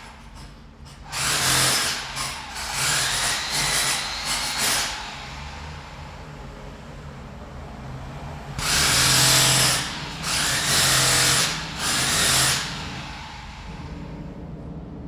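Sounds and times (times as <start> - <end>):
construction site background noise: 0.0 - 15.0
power drill bursts: 1.0 - 6.4, 8.6 - 13.8.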